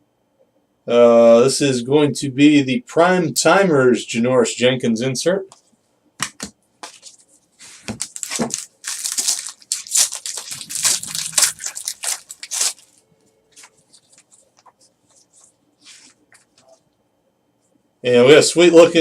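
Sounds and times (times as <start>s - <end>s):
card pack wrapper crinkling: 7.9s - 15.5s.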